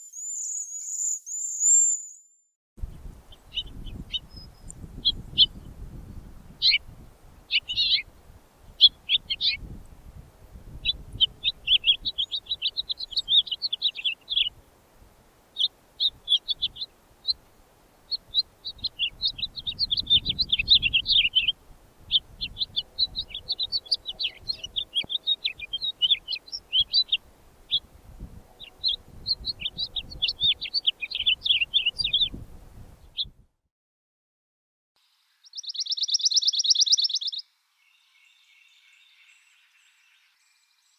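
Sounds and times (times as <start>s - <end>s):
songbird warbling: 7.5s - 8.1s, 10.8s - 14.6s, 18.1s - 27.9s, 28.5s - 32.3s, 35.4s - 40.4s.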